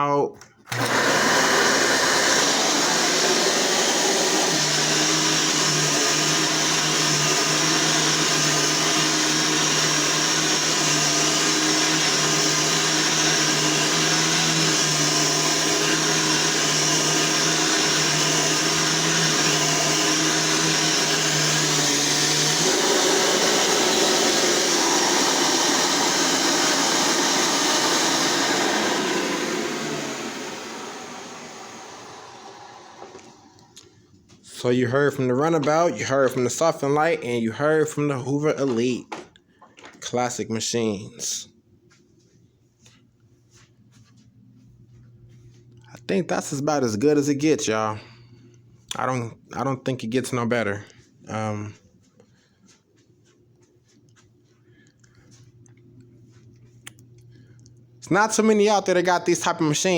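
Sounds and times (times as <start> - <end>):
vacuum cleaner motor whine: 0.7 - 33.9.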